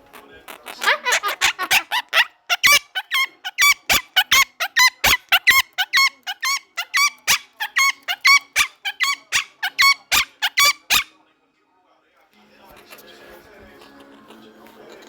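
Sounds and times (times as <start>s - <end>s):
parrot screaming: 0.5s - 11.1s.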